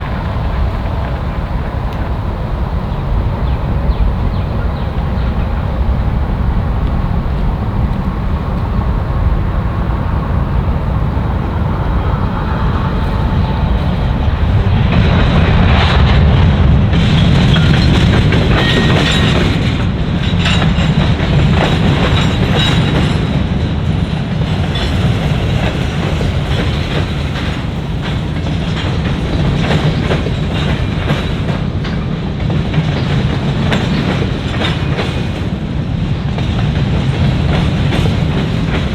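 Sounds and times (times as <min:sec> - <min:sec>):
freight train rumbling past: 0:00.0 - 0:38.9
wheels clicking over rail joints: 0:12.4 - 0:35.6.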